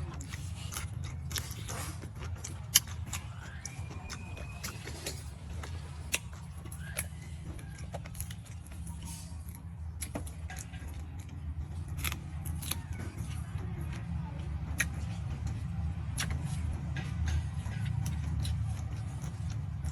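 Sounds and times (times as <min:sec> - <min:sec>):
clicks and clinks of eating: 0:00.0 - 0:19.9.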